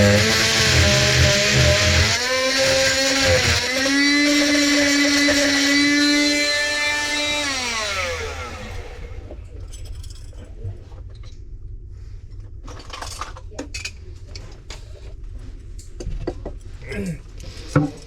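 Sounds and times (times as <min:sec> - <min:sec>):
electric cutting tool winding down: 0:00.0 - 0:09.4.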